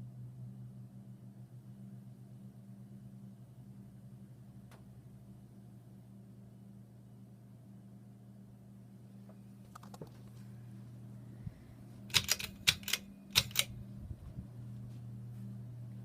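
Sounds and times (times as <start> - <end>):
ceiling fan motor humming: 0.0 - 16.0
sharp clicks: 9.7 - 10.1, 12.1 - 13.8.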